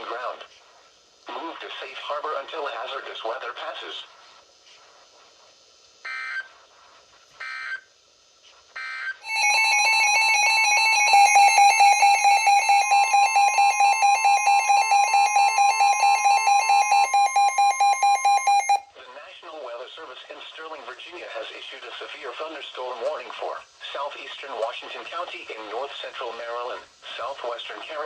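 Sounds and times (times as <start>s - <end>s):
two-tone electronic attention signal: 9.2s - 18.8s
digital alert data squawks: 9.3s - 18.8s.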